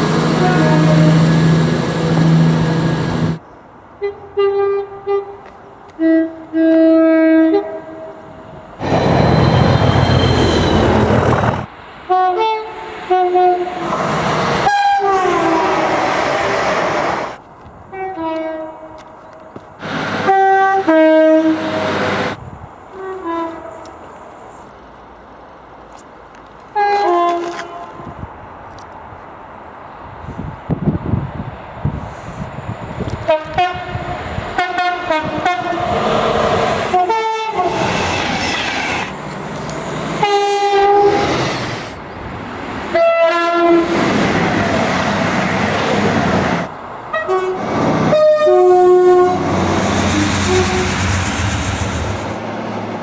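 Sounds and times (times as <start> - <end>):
two-tone train horn blasts: 0.0 - 3.4, 4.0 - 8.2, 12.1 - 13.8, 14.6 - 15.9, 17.9 - 19.0, 20.2 - 22.0, 22.9 - 24.0, 26.7 - 28.1, 33.2 - 35.8, 36.9 - 37.8, 40.2 - 41.2, 42.9 - 43.9, 47.1 - 51.0
trains rushing by: 0.0 - 4.0, 6.1 - 17.9, 19.6 - 26.3, 29.4 - 53.0.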